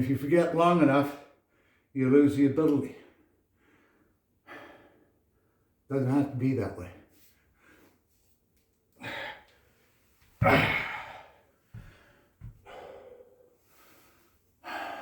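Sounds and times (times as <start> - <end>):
man breathing out hard: 9.0 - 9.6, 10.4 - 15.0.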